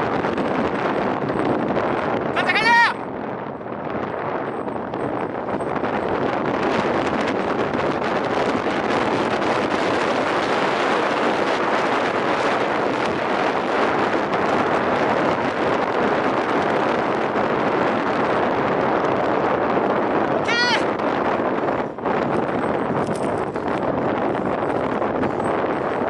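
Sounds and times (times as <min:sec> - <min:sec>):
road noise: 0:00.0 - 0:26.0
wind noise on microphone: 0:00.0 - 0:26.0.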